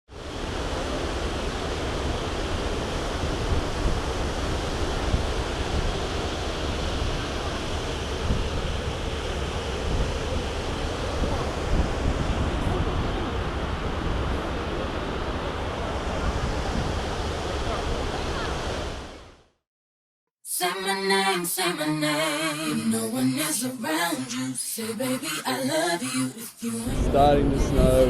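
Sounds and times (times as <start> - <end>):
wind buffeting microphone: 1.8 - 19.1, 26.9 - 28.0.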